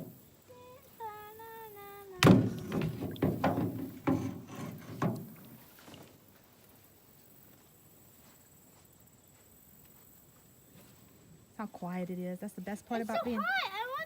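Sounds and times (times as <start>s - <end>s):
person humming: 0.5s - 2.3s
knocks and thuds in canoe: 2.2s - 6.1s.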